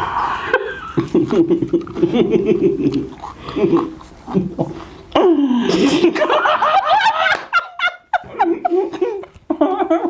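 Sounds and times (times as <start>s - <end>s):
people laughing and giggling: 5.7s - 10.0s.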